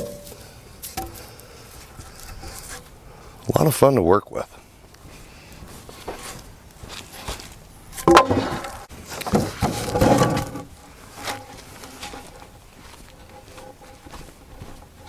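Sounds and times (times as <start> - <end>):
timbers knocking and scraping wood: 0.0 - 1.4, 5.8 - 15.0.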